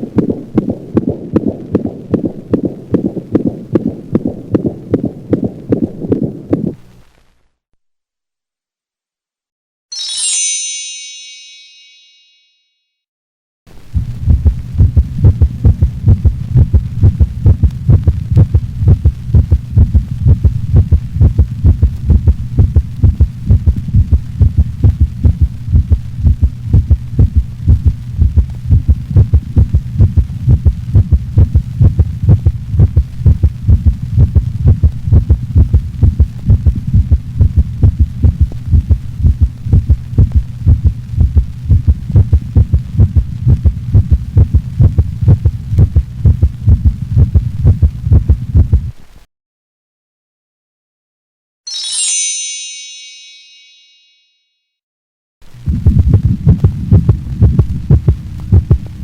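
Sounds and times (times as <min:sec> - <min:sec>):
fast heartbeat: 0:00.0 - 0:06.8, 0:14.0 - 0:49.0, 0:55.6 - 0:59.0
constant low rumble: 0:13.7 - 0:49.2, 0:55.4 - 0:59.0.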